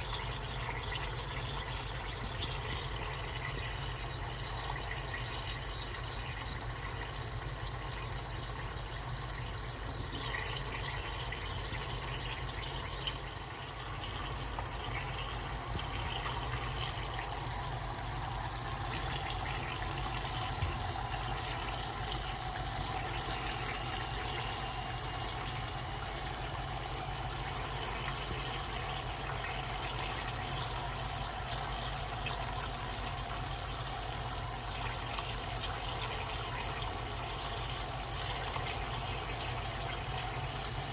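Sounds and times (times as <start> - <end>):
dry ice bubbling and fizzing in water: 0.0 - 40.9.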